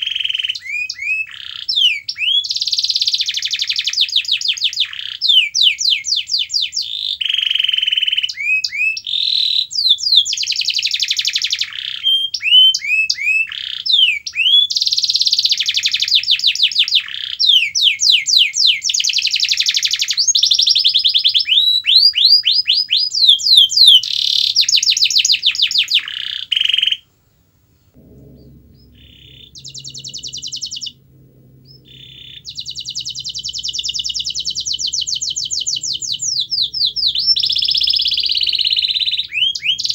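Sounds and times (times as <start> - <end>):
canary singing trills: 0.0 - 27.0, 28.0 - 39.9
faint low hum: 23.3 - 39.9.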